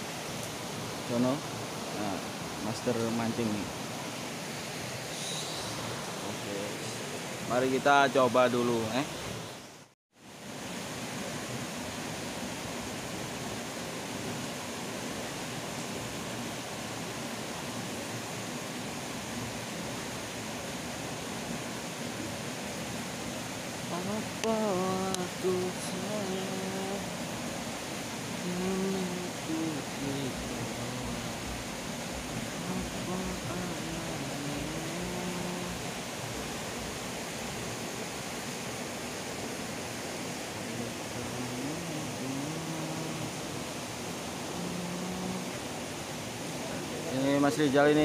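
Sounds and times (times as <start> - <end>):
river water rushing: 0.0 - 48.0
faint wavering hum: 23.8 - 38.3, 40.7 - 46.1.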